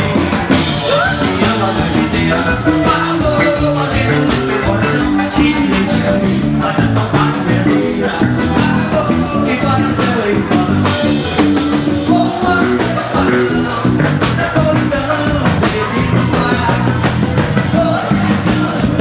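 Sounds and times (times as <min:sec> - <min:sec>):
band music with quick beat: 0:00.0 - 0:19.0.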